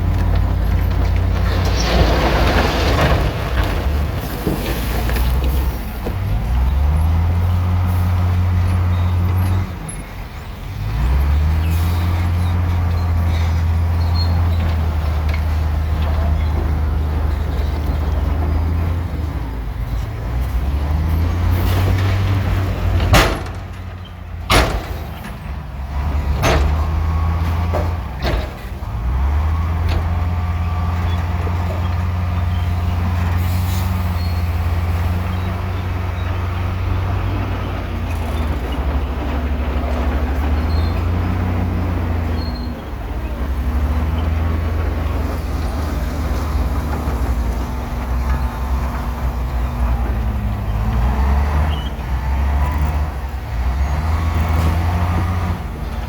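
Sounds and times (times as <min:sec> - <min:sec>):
bulldozer diesel engine: 0:00.0 - 0:56.0.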